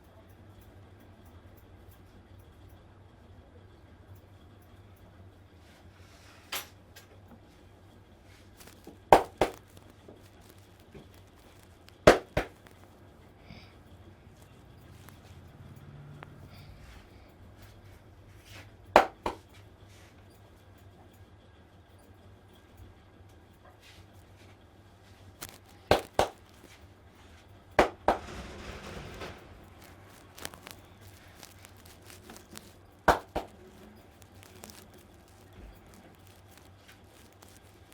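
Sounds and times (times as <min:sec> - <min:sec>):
hands slapping on body: 0:12.1 - 0:12.5, 0:19.0 - 0:19.4, 0:25.9 - 0:26.4, 0:33.1 - 0:33.5
hands smacking skin: 0:33.1 - 0:33.6.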